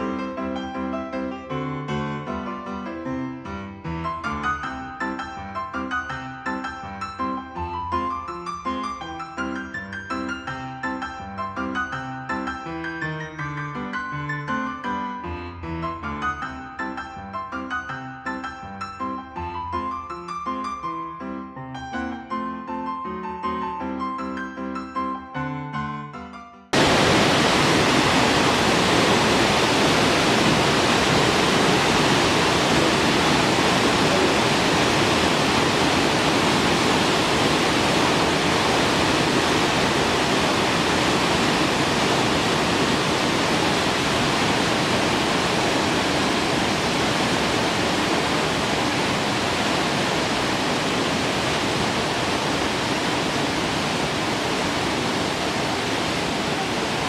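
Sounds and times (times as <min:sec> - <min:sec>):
waterfall rushing: 0:26.8 - 0:57.0.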